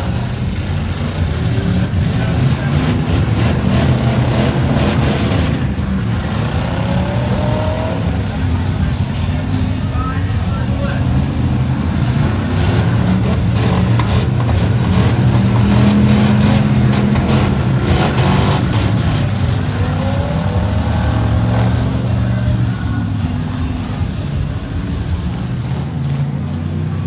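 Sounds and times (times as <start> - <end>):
car engines revving: 0.0 - 27.0.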